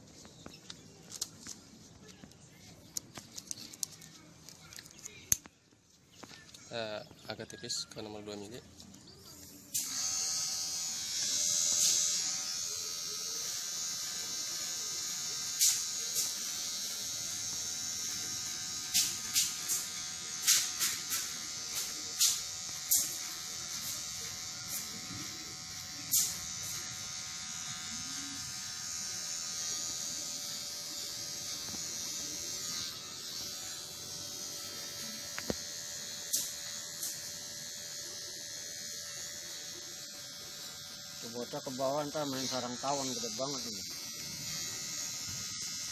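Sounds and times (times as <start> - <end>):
electric hair clipper humming: 9.3 - 45.9.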